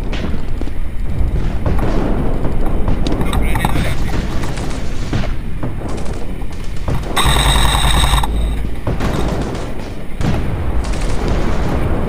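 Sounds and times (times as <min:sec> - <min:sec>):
scattered clicks: 0:03.0 - 0:04.9, 0:06.0 - 0:09.7
airsoft gun full-auto burst: 0:06.9 - 0:09.6.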